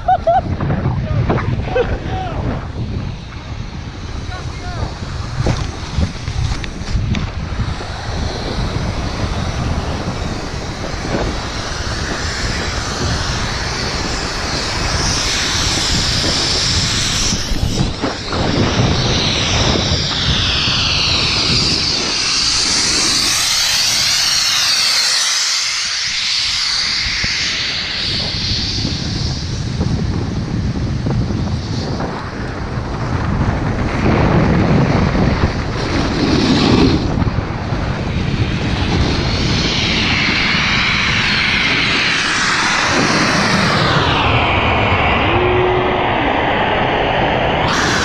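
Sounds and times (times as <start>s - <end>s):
snowboard sliding over snow: 0.0s - 48.0s
wind buffeting microphone: 0.0s - 48.0s.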